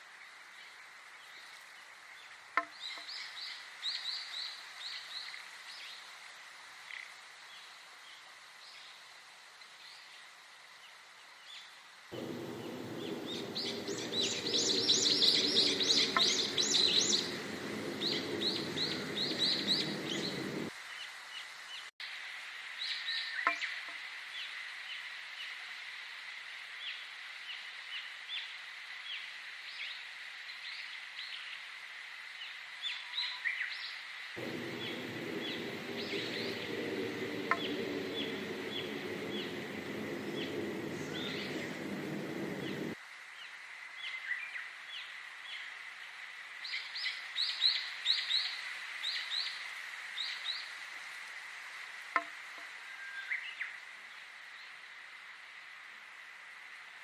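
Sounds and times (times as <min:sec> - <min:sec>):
high insect-like whine: 0:12.2 - 0:20.7, 0:34.4 - 0:43.0
low droning hum: 0:12.2 - 0:20.7, 0:34.4 - 0:43.0
small birds chirping: 0:12.2 - 0:20.7, 0:34.4 - 0:43.0.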